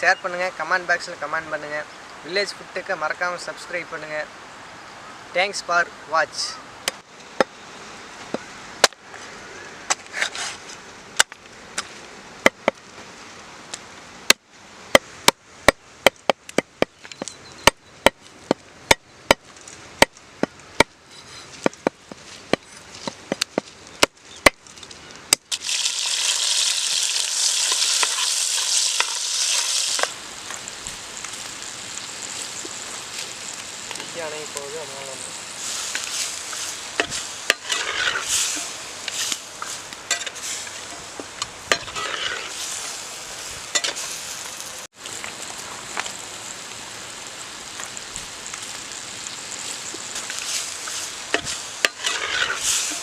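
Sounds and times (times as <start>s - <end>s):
food sizzling in hot oil: 25.5s - 53.0s.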